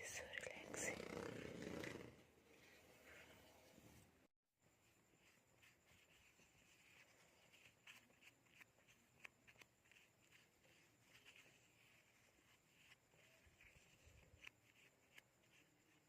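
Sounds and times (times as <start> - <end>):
faint soft scratching: 0.0 - 16.0.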